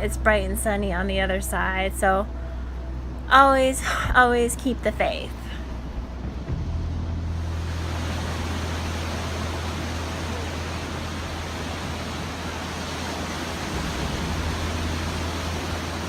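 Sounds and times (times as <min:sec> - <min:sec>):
low rumble: 0:00.0 - 0:16.0
sea wind: 0:00.0 - 0:16.0
ocean surf: 0:07.3 - 0:16.0.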